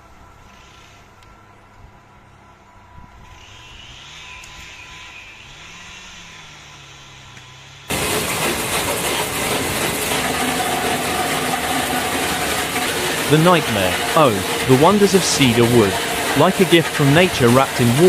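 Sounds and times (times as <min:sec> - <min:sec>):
heavy machinery engine running: 0:07.9 - 0:18.0
loud noisy machine sound: 0:07.9 - 0:18.0.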